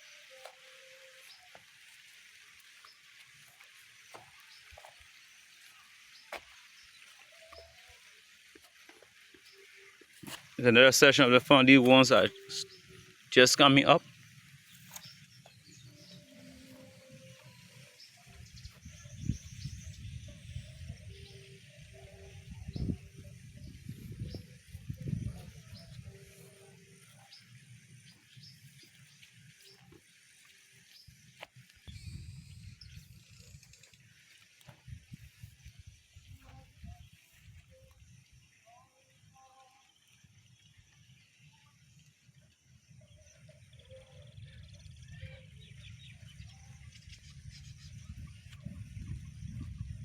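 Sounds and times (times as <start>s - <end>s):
birds chirping: 0.0s - 38.7s, 39.8s - 50.0s
wind rumble on microphone: 18.3s - 26.4s, 31.9s - 33.7s, 34.8s - 37.8s, 44.4s - 50.0s
low rumbling on microphone: 47.1s - 50.0s.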